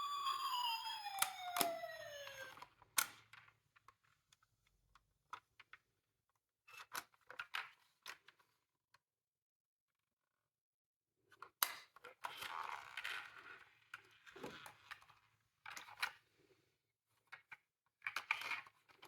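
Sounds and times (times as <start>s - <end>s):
toy electronic siren: 0.0s - 2.6s
sharp clicks: 0.2s - 2.6s.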